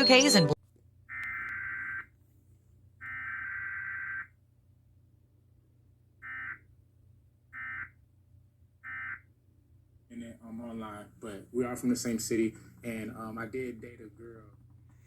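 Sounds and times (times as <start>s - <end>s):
two-tone data bursts: 0.0s - 2.0s.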